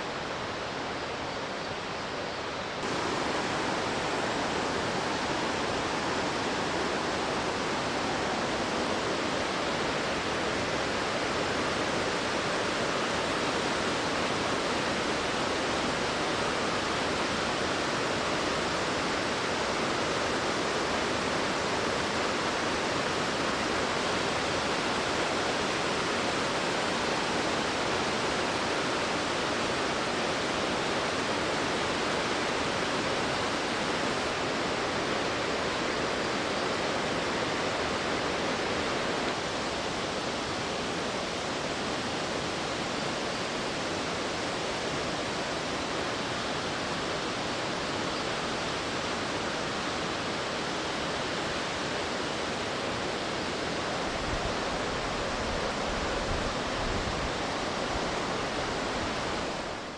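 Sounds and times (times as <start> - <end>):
waterfall rushing: 0.0 - 59.9.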